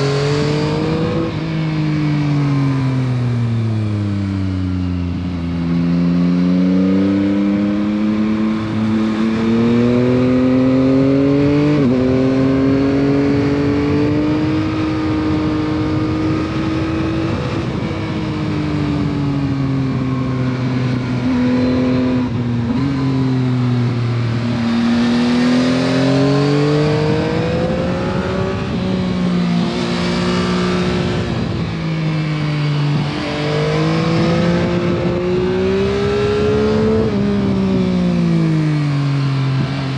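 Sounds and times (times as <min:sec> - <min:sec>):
motorcycle engine revving: 0:00.0 - 0:39.9
wind rush: 0:11.4 - 0:38.4.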